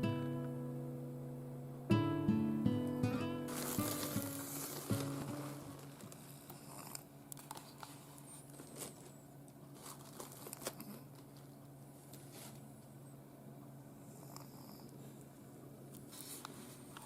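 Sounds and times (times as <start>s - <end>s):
plucked acoustic guitar notes: 0.0s - 6.0s.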